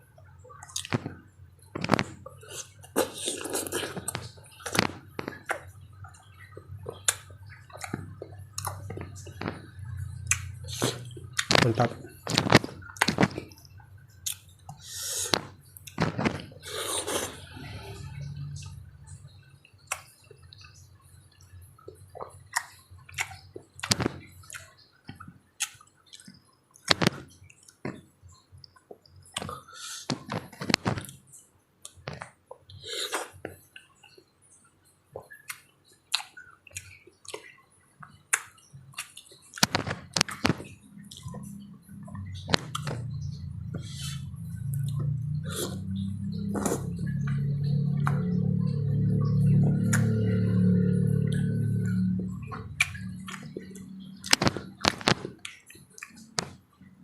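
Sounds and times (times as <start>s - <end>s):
wet chewing: 1.8s - 18.0s, 35.2s - 56.6s
lip smacks: 6.8s - 9.7s, 10.3s - 11.6s, 22.2s - 27.8s, 35.2s - 48.3s, 49.8s - 50.5s, 51.3s - 56.6s
sucking: 16.6s - 18.8s, 43.6s - 55.2s
sharp mouth clicks: 52.8s - 54.5s.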